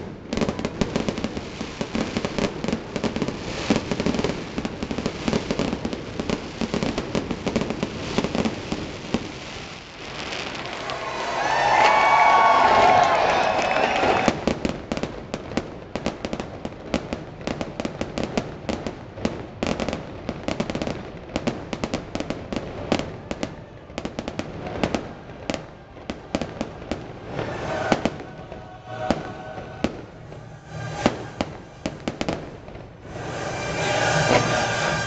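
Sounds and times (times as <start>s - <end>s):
fireworks bangs and crackling: 0.0s - 35.0s
music: 27.4s - 32.3s, 33.0s - 35.0s.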